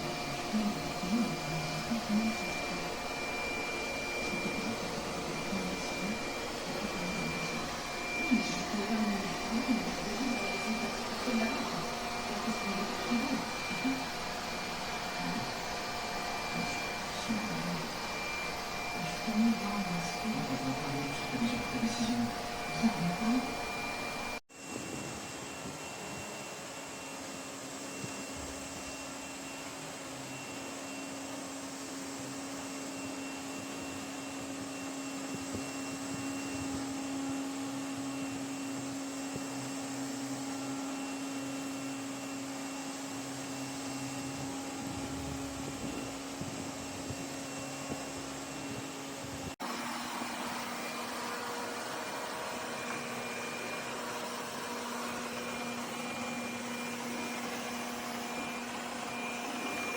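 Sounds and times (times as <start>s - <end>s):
vacuum cleaner running: 0.0s - 59.9s.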